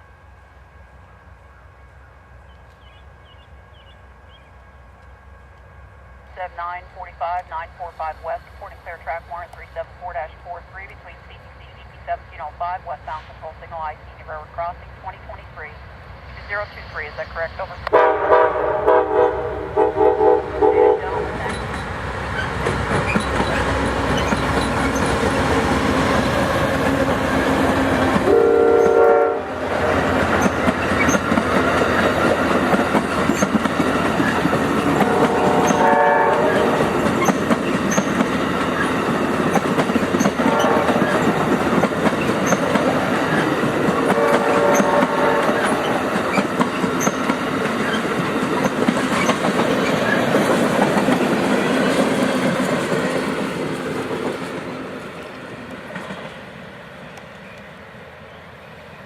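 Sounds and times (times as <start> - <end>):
train air horn blasts: 17.9 - 21.5, 28.2 - 30.1, 34.9 - 36.9, 40.4 - 41.2, 44.0 - 46.0
train wheels clicking on rail joints: 21.4 - 29.0, 30.0 - 56.4.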